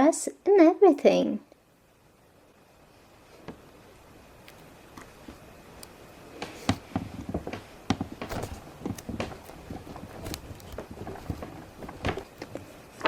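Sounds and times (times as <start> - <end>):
plastic tools clicking and tapping: 5.8 - 12.7.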